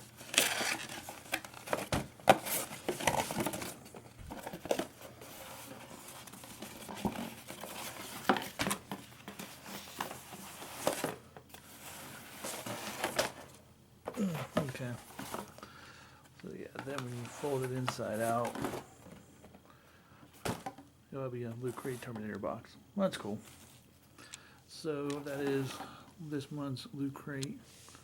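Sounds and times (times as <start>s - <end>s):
cardboard crinkling and rustling: 0.0s - 13.6s, 14.2s - 15.6s, 16.6s - 19.2s.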